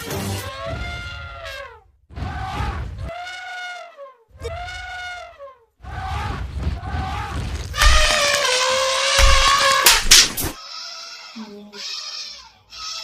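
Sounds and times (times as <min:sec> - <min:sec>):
elephant trumpeting: 0:06.9 - 0:13.0.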